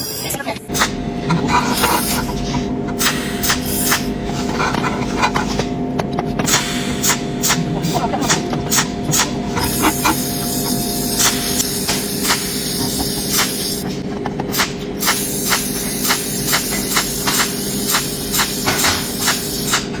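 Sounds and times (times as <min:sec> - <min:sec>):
welding hiss: 0:03.0 - 0:04.1, 0:08.7 - 0:13.9, 0:14.5 - 0:20.0.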